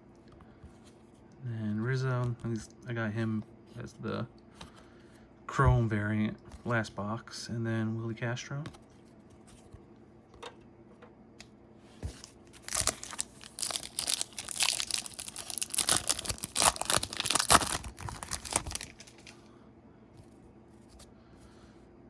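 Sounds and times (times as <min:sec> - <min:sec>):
card pack wrapper tearing and crinkling: 0:12.0 - 0:19.5.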